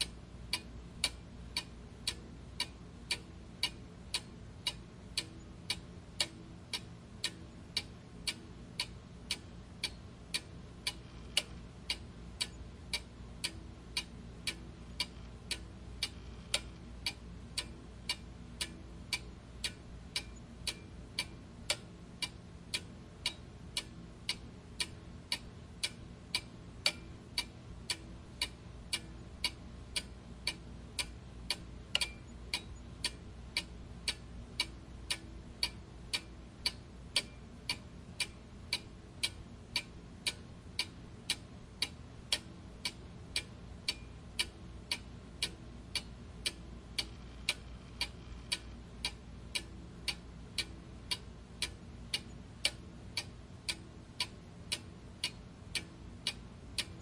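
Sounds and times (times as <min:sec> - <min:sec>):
clock ticking: 0:00.0 - 0:57.0
faint low hum: 0:00.0 - 0:57.0.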